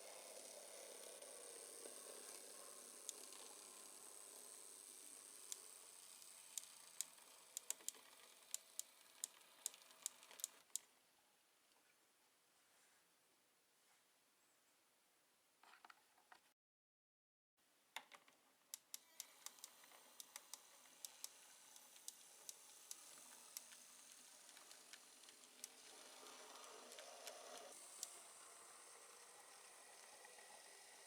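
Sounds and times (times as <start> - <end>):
model train motor whir: 0.0 - 10.8, 18.8 - 31.0
clicks from model train track: 0.1 - 10.8, 18.0 - 31.0.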